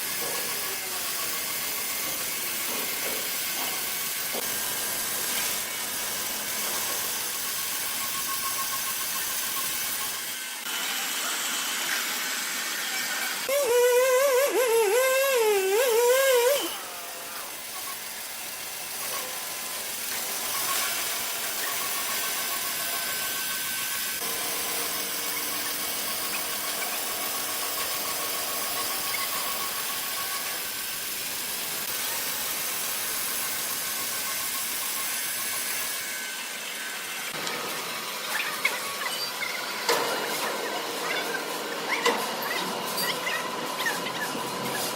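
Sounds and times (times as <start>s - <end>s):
sawmill machinery hissing: 0.0s - 44.9s
loud high wavering squeal: 11.8s - 18.0s.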